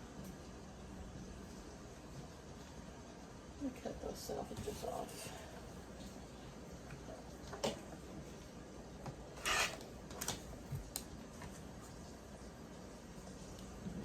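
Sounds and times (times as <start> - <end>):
fabric cutting rasp: 9.4 - 9.8.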